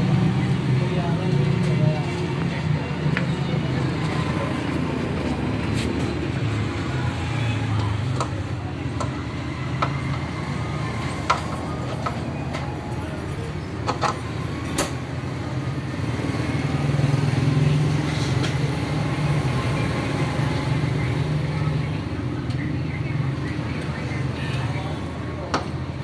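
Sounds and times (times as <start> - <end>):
traffic hum: 0.0 - 26.0.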